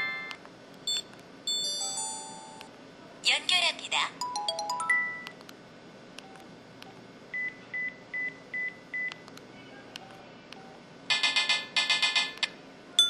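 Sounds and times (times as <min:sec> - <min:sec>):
short electronic beeps: 0:00.9 - 0:01.7
bright electronic jingle: 0:04.2 - 0:05.3.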